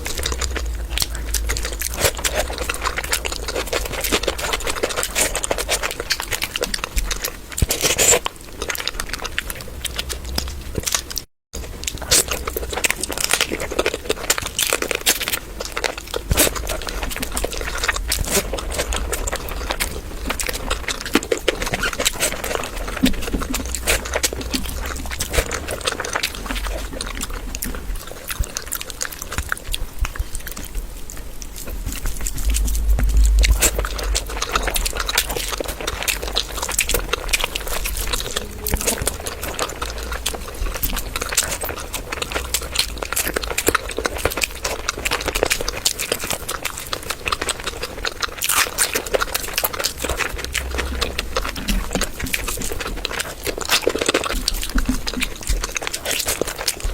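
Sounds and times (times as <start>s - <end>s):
person chewing and smacking: 0.0s - 56.9s
mouth clicks: 14.3s - 56.9s.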